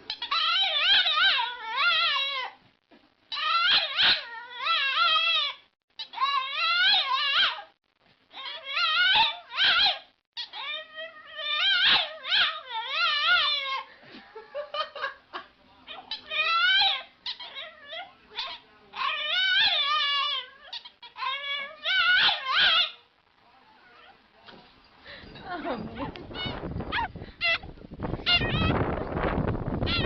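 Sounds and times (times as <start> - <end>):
dog whining and yowling: 0.1 - 2.6, 3.3 - 7.7, 8.3 - 13.9, 15.9 - 23.0, 25.9 - 28.8, 29.8 - 30.0.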